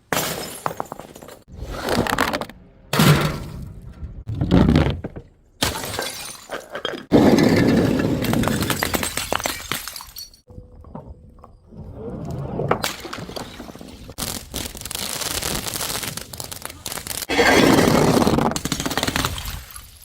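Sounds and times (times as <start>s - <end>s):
glass bottles smashing: 0.1s - 1.5s, 5.6s - 10.5s
breaking glass shards tinkling: 8.6s - 10.5s.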